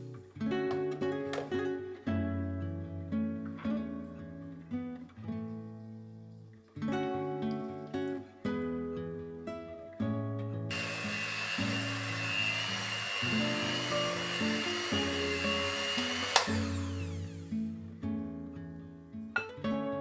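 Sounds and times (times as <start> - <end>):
acoustic guitar music: 0.0 - 10.7, 13.2 - 20.0
appliance motor whining: 10.7 - 17.8
appliance switch click: 13.7 - 17.1.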